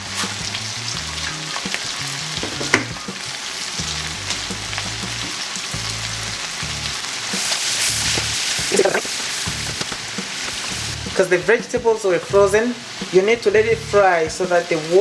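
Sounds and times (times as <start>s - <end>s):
background music with bass: 0.0s - 14.5s
food sizzling in a pan: 0.0s - 15.0s.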